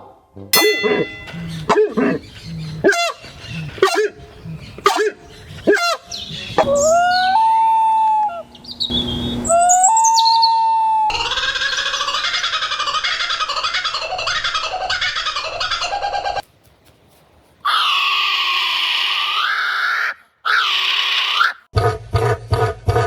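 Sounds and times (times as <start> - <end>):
rapid dense bird chattering: 1.5 - 6.9.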